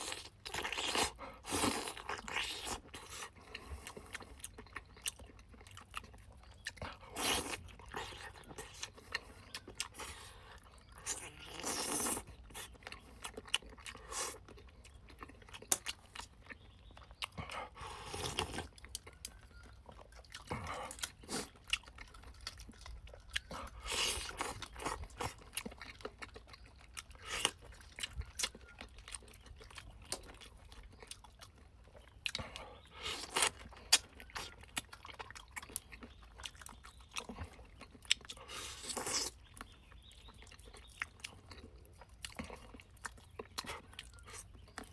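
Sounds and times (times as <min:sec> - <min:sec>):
slurping: 0:00.0 - 0:05.0, 0:06.6 - 0:14.6, 0:17.2 - 0:19.6, 0:38.3 - 0:39.5
person chewing and crunching: 0:00.0 - 0:44.9.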